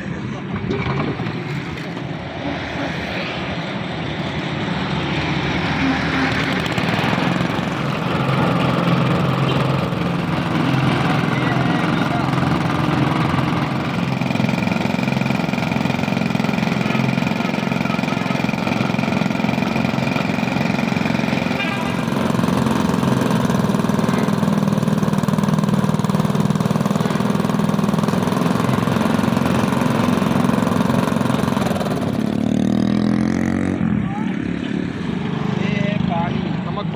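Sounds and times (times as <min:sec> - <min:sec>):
sugarcane juicer machine running: 0:05.8 - 0:33.7.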